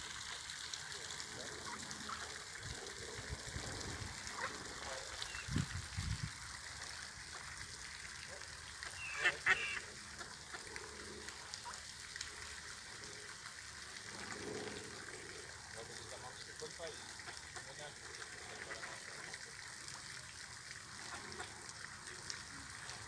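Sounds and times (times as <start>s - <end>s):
waterfowl honking: 4.2s - 5.6s, 8.8s - 10.7s, 17.0s - 19.0s.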